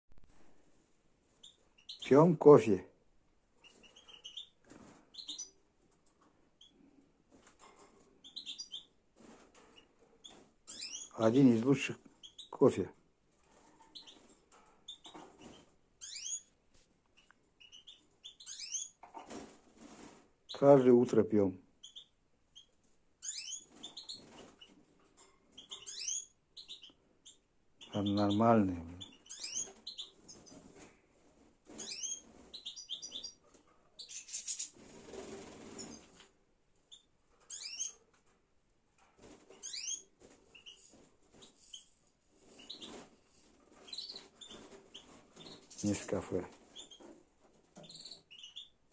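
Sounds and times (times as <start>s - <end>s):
small songbirds chirping: 1.3s - 2.6s, 3.6s - 5.6s, 8.2s - 9.0s, 9.8s - 12.8s, 13.8s - 19.1s, 20.5s - 24.8s, 25.5s - 30.8s, 31.7s - 33.4s, 34.0s - 36.2s, 36.8s - 38.0s, 39.4s - 47.2s, 47.8s - 48.9s.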